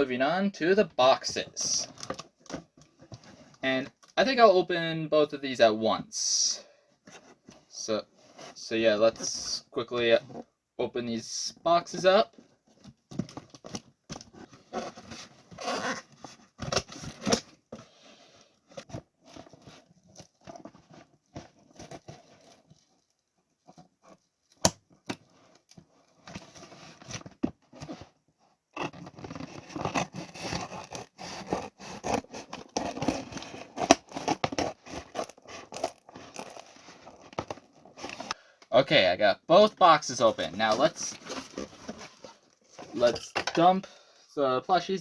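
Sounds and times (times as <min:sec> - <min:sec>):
packing tape tearing: 0:29.5 - 0:36.7
cardboard flaps scraping: 0:40.2 - 0:43.2.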